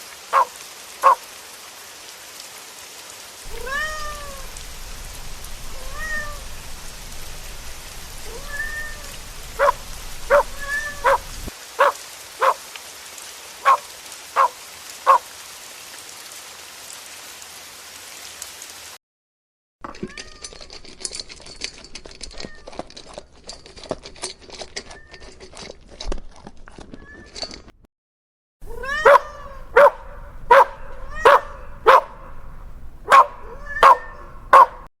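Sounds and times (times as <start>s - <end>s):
steady hiss: 0.0s - 15.8s, 29.4s - 34.8s
puppy yipping: 0.4s - 1.2s, 8.2s - 12.6s, 13.6s - 13.8s, 28.6s - 34.9s
kitten meowing: 3.5s - 4.6s, 5.7s - 6.7s, 8.2s - 11.5s, 28.6s - 34.9s.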